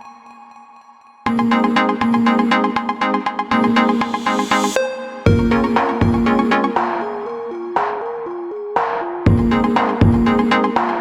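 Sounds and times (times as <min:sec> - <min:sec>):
electronic music with synth melody: 0:00.0 - 0:11.0
heavy bass beat: 0:05.3 - 0:07.0, 0:09.3 - 0:11.0.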